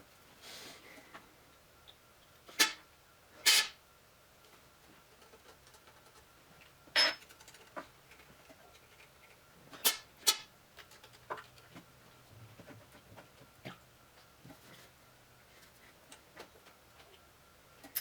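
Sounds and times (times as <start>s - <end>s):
small hard parts clicking and knocking: 5.0s - 11.9s, 17.8s - 18.0s.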